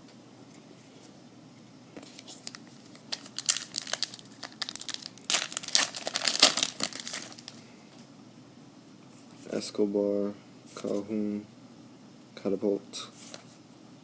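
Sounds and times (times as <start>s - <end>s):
wrapper crinkling and tearing: 2.2s - 7.6s.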